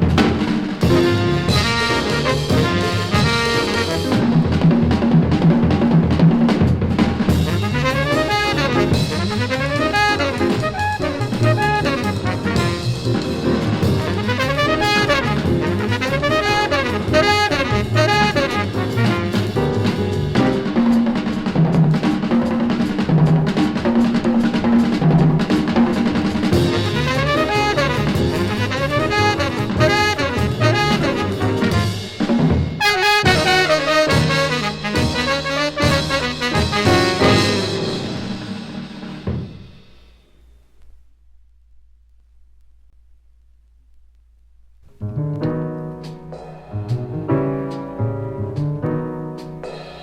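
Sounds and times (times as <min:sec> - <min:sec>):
busy drum kit playing: 0:00.0 - 0:40.8, 0:44.9 - 0:50.0
jazz quintet from vinyl record: 0:00.0 - 0:50.0
held horn note: 0:00.8 - 0:04.8, 0:07.3 - 0:21.1, 0:26.6 - 0:39.7
trumpet and saxophone melody: 0:00.8 - 0:05.1, 0:07.3 - 0:21.3, 0:26.4 - 0:38.8.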